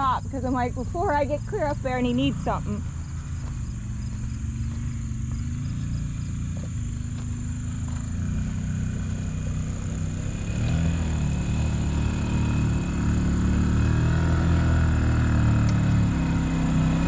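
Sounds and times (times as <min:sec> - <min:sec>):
utility vehicle engine idling: 0:00.0 - 0:17.0
high-pitched insect drone: 0:01.4 - 0:12.8.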